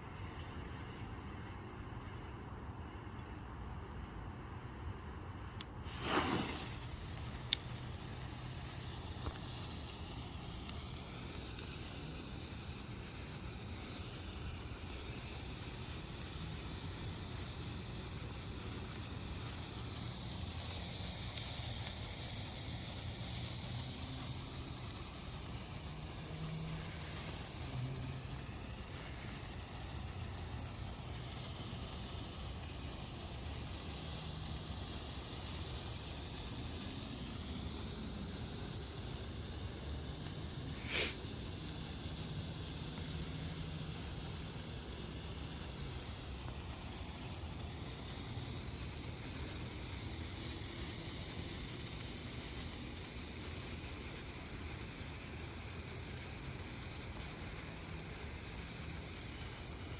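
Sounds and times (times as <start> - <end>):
sparkler hissing: 5.6 - 59.9.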